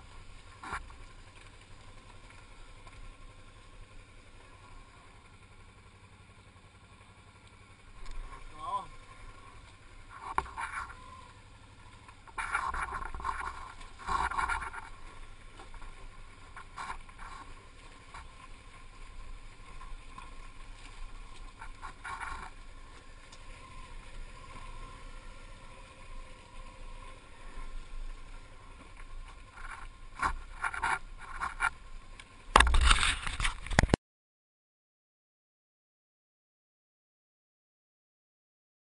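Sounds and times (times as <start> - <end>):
motorcycle engine rumble: 0.0 - 34.0
bumps and rattles: 12.0 - 18.5, 19.7 - 23.4, 28.8 - 34.0.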